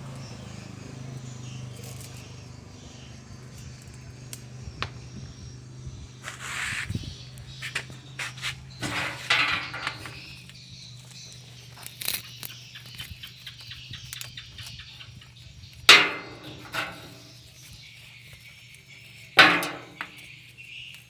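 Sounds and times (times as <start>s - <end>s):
hard knocks and clinks: 8.8s - 10.4s, 15.9s - 17.4s, 19.4s - 20.2s.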